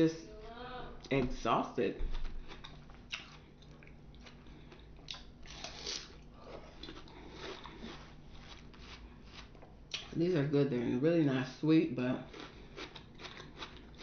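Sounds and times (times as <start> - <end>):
person biting and chewing fruit: 2.1 - 10.2, 12.2 - 14.0.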